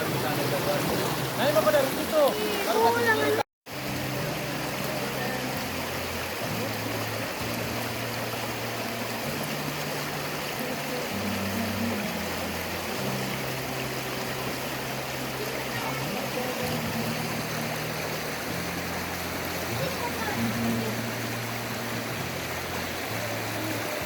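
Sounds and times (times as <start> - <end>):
river water rushing: 0.0 - 24.0
soft background music: 1.4 - 24.0.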